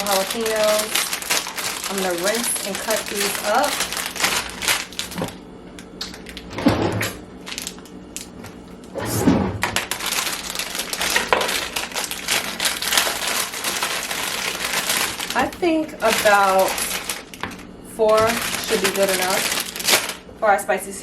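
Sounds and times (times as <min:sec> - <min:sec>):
crinkling handling of peppers: 0:00.0 - 0:20.5.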